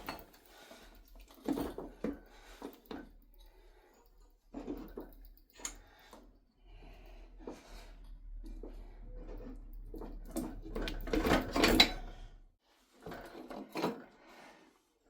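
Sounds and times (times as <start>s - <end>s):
metal parts clinking and knocking: 9.4s - 12.2s.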